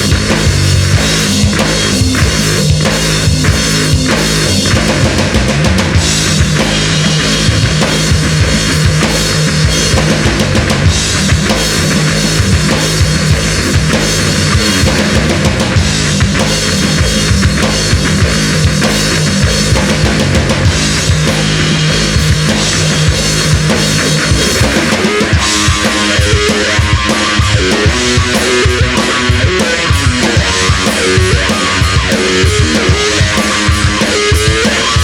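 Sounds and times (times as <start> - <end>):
distorted guitars and bass: 0.0 - 35.0
drum kit beat: 0.0 - 35.0
rock band instrumental: 0.0 - 35.0.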